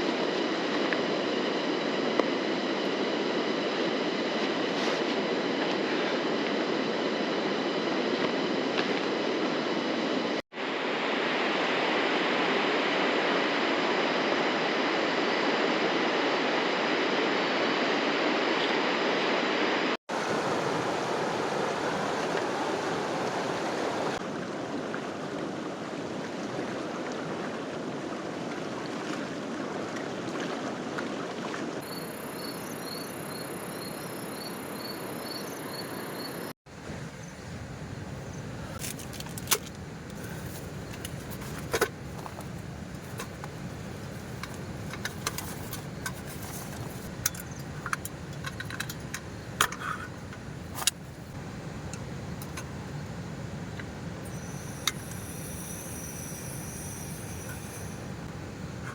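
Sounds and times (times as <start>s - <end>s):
river water rushing: 20.1s - 31.8s.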